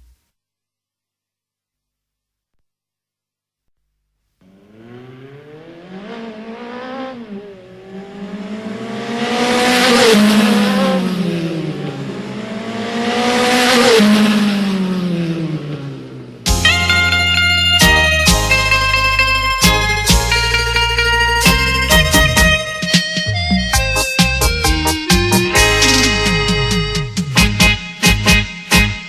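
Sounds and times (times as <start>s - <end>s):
synthesized race car engine: 4.4s - 16.5s
loud burst of music: 16.5s - 29.0s.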